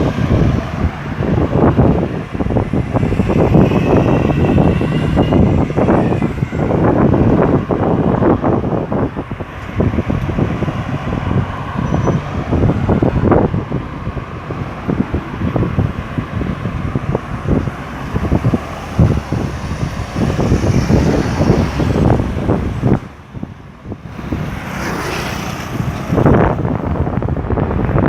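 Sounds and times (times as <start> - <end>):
vehicles driving past: 0.0 - 28.0.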